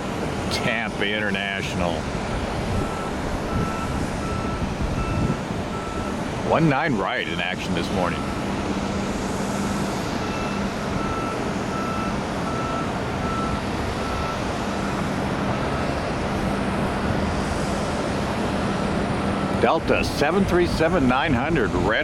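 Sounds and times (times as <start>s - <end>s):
engine rumble: 0.0s - 22.0s
backup alarm beeping: 2.7s - 6.8s, 8.0s - 8.6s, 9.5s - 15.1s.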